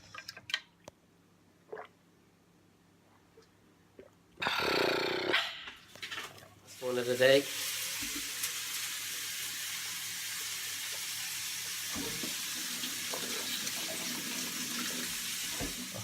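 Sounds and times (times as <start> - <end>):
steady hiss: 6.6 - 13.8.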